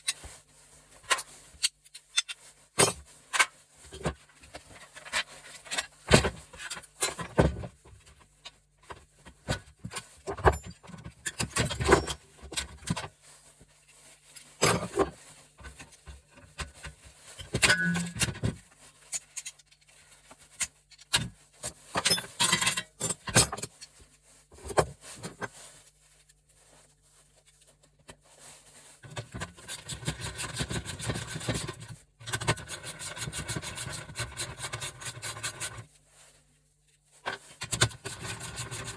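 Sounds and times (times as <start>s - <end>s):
metal tools clinking and knocking: 10.4s - 13.0s, 16.6s - 21.2s, 21.9s - 23.9s
rapid metal rasping: 32.3s - 35.8s, 37.7s - 38.9s.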